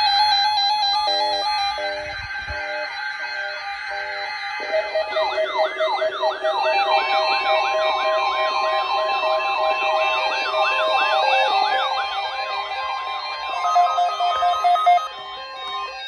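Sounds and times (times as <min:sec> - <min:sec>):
electronic yelp siren: 0:00.0 - 0:16.0
steady electronic tones: 0:03.4 - 0:15.8.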